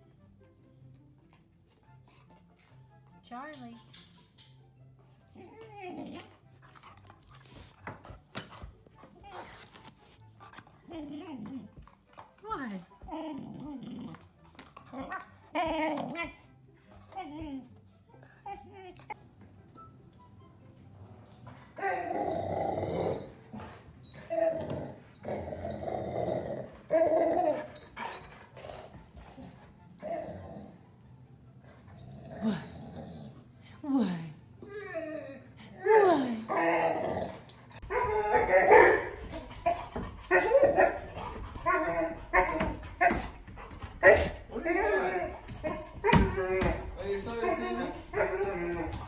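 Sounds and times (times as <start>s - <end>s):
dog grumbling vocal noises: 12.8s - 16.6s, 21.4s - 37.8s.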